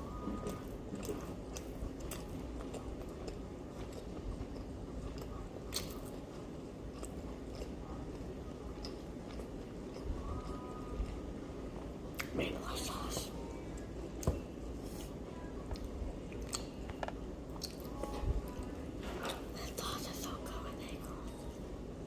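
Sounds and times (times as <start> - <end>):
person chewing and crunching food: 0.1 - 12.3.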